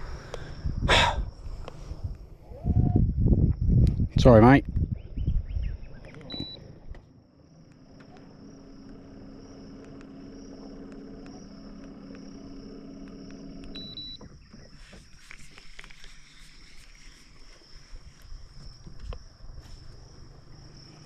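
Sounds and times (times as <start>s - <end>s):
insects droning: 0.0s - 21.0s
boat motor humming: 5.9s - 21.0s.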